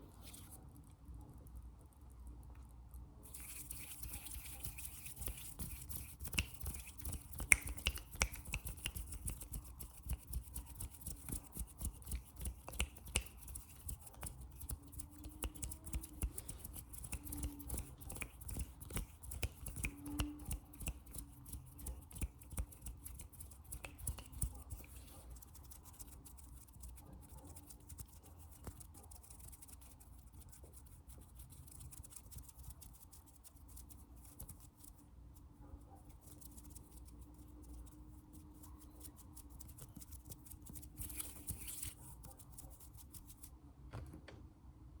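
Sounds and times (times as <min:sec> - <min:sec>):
fast fingertip tapping: 0:03.3 - 0:26.1
finger clicks: 0:03.5 - 0:24.9.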